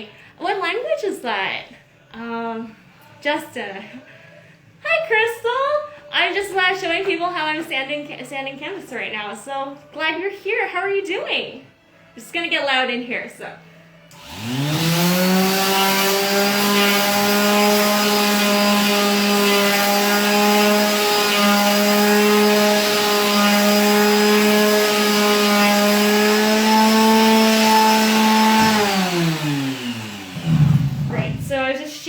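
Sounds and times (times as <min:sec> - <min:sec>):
electric sander running: 0:14.1 - 0:31.6.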